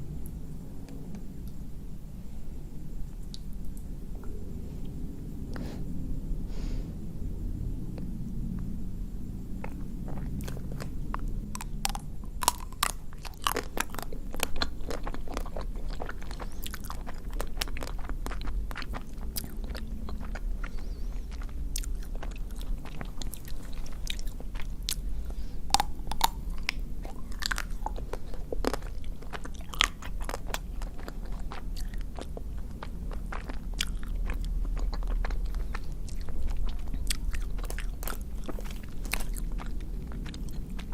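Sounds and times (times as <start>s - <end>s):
biting and chewing ice cream bar: 9.6s - 40.9s.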